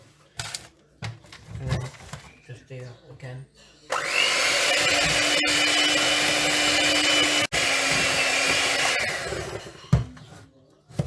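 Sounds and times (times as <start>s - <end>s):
electric mixer whining: 3.9s - 9.8s.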